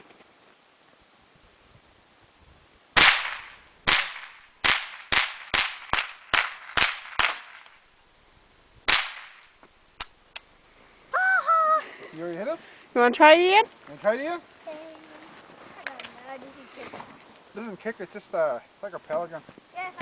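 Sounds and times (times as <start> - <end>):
rifle shots: 3.0 - 7.7, 8.9 - 9.5.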